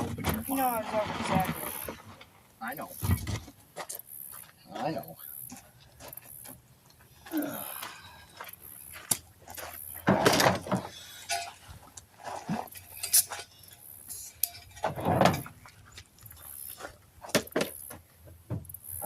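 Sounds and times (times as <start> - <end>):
metal tools clinking: 10.3 - 11.9, 12.5 - 15.7.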